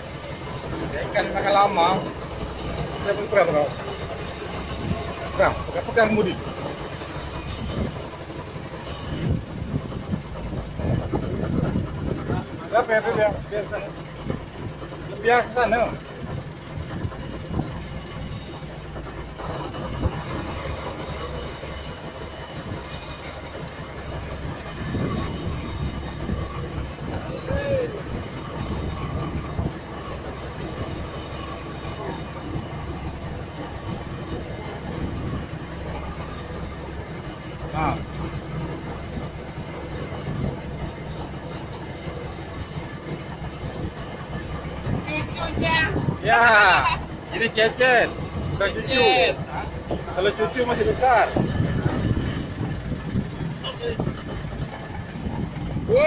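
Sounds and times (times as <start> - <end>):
boat engine rumbling: 0.0 - 56.0
engine knocks: 0.0 - 56.0
water noise: 0.0 - 56.0
wind: 0.0 - 56.0.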